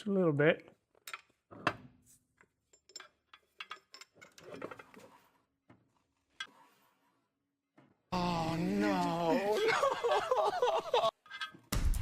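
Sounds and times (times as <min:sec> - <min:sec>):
metallic clinks of tools: 0:11.2 - 0:11.7.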